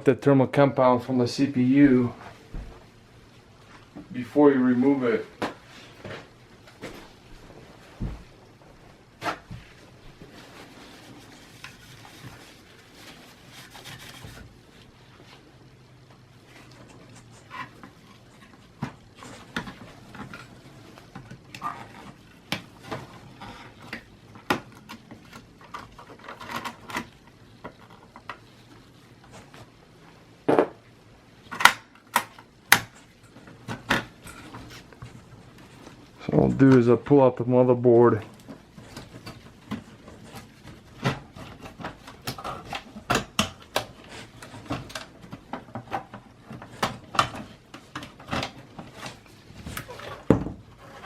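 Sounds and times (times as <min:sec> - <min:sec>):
paper towel rubbing: 0:09.8 - 0:15.6.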